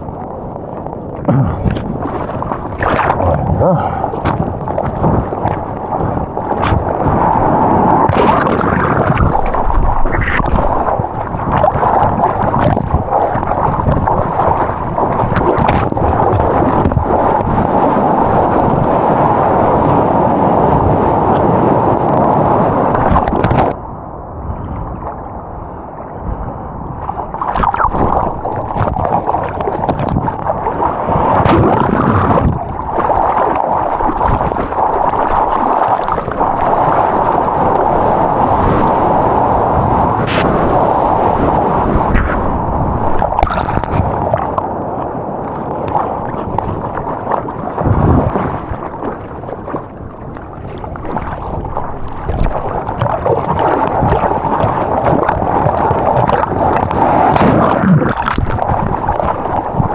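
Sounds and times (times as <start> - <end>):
sea water rushing and sloshing: 0.0 - 59.9.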